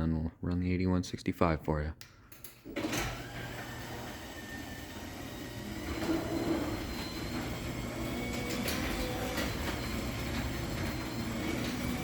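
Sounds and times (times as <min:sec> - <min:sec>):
garage door opener rumbling: 0:02.6 - 0:12.0.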